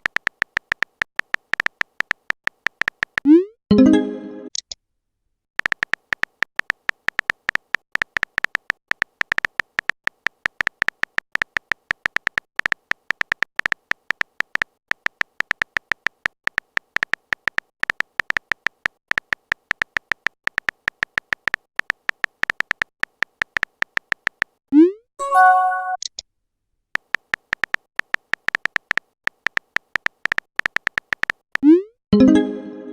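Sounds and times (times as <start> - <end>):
typing sound effect ticks: 0.0 - 3.5, 5.6 - 24.6, 27.0 - 31.8.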